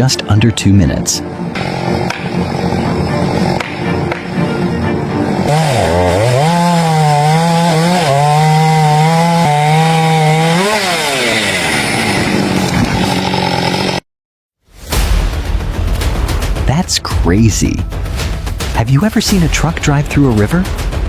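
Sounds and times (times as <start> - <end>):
rough engine noise: 1.4 - 14.0
chainsaw cutting tree trunk: 1.6 - 14.0.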